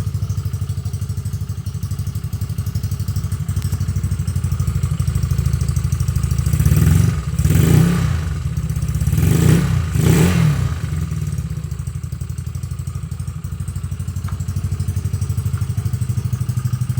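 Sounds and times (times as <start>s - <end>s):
scooter engine idling: 0.0s - 16.9s
scooter engine revving: 2.0s - 12.4s, 13.4s - 16.9s.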